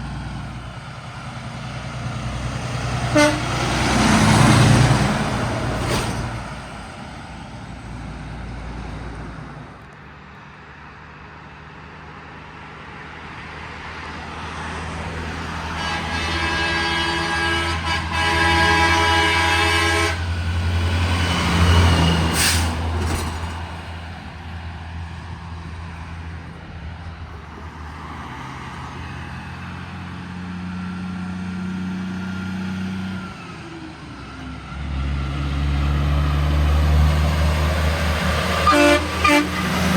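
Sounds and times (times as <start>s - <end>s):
truck diesel engine passing: 0.0s - 39.9s
truck air horn blasts: 3.1s - 4.4s, 15.6s - 20.5s, 38.5s - 39.9s.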